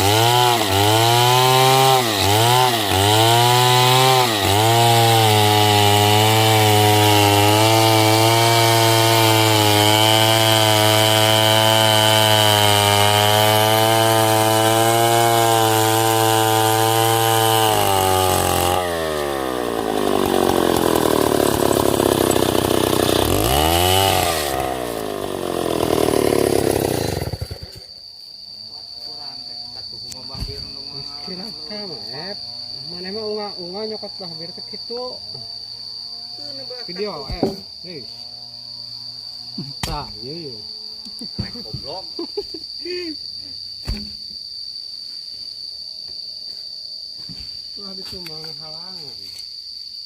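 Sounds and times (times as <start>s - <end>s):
chainsaw cutting wood: 0.0s - 28.0s, 29.7s - 40.4s, 43.8s - 44.5s.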